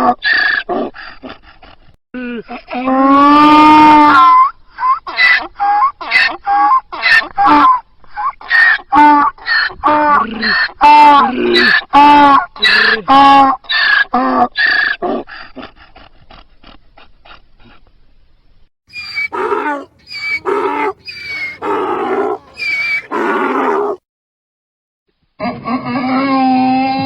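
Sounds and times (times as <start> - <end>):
donkey braying: 18.9 - 24.0.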